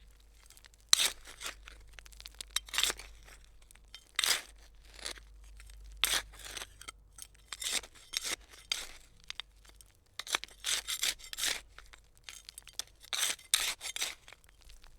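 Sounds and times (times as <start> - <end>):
hand trowel scraping soil: 0.5 - 1.9, 2.6 - 3.4, 6.0 - 9.1, 10.2 - 14.8.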